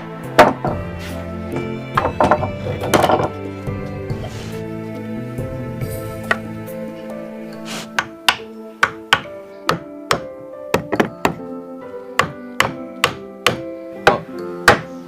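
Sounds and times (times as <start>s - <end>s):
background music: 0.0s - 15.0s
sharp knocks: 8.0s - 11.4s.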